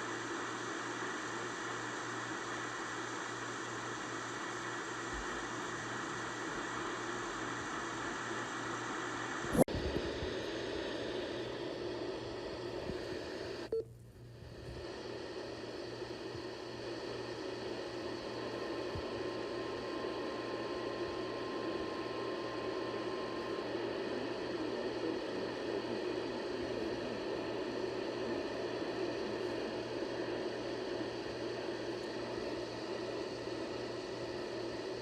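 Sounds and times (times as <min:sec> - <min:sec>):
radio static hiss: 0:00.0 - 0:13.8, 0:14.4 - 0:35.0.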